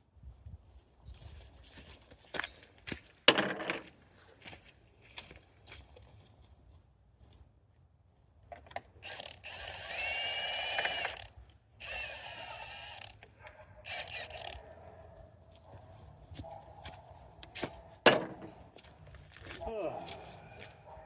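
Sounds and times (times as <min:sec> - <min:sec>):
tool whirring and ratcheting: 0:09.0 - 0:13.3, 0:13.9 - 0:14.6.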